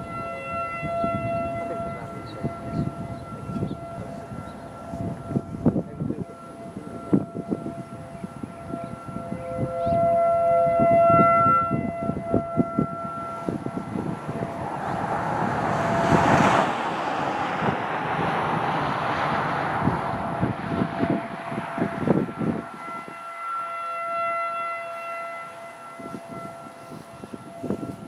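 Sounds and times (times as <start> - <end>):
warning sirens wailing: 0.0 - 28.0
broad rushing noise: 13.5 - 22.8.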